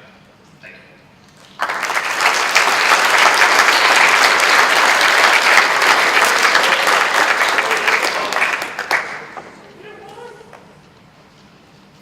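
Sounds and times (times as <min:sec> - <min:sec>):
audience applauding: 0:01.4 - 0:09.8.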